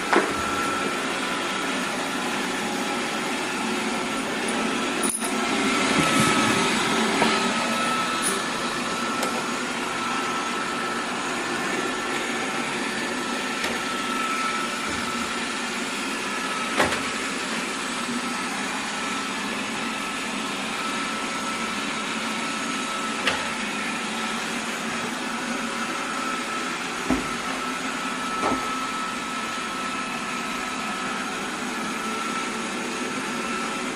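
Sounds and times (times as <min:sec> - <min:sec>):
robot vacuum whirring: 0:00.0 - 0:16.9.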